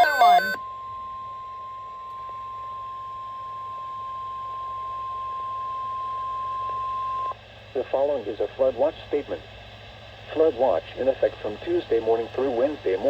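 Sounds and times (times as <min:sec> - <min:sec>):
steady high alert tone: 0:00.0 - 0:00.6.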